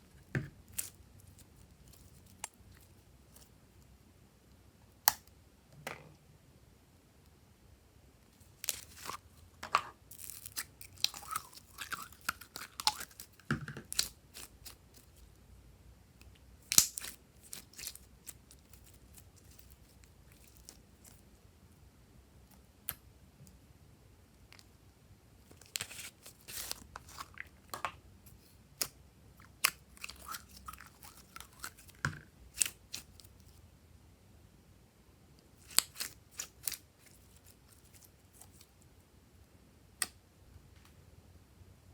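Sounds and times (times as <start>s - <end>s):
slime crackling and popping: 10.1s - 15.2s, 16.6s - 21.2s, 25.5s - 27.4s, 35.6s - 38.6s.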